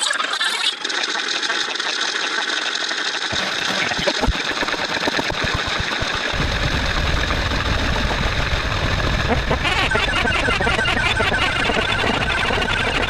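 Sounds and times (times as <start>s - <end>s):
fast mechanical rattling: 3.3s - 10.6s.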